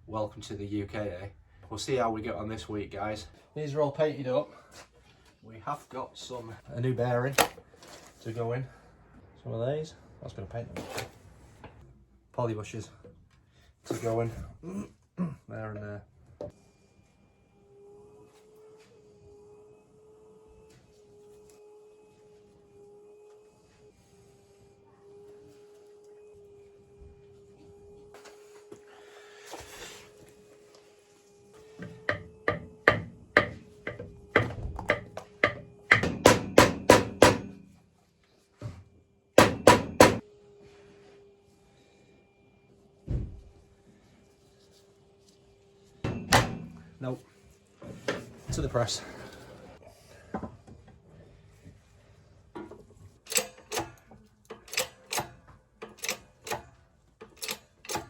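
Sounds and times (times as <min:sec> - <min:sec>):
hammer striking metal: 0:31.8 - 0:37.7, 0:39.4 - 0:40.2, 0:46.1 - 0:46.8.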